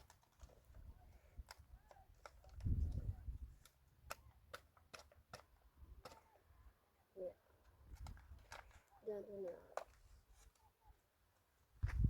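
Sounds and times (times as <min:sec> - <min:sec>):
sharp clicks and light knocks: 0:01.4 - 0:06.3.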